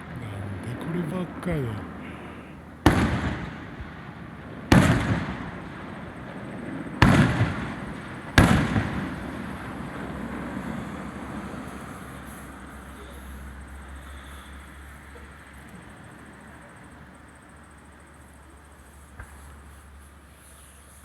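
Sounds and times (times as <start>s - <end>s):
rumbling echo: 0.0s - 12.5s
firework shells booming: 0.0s - 13.3s.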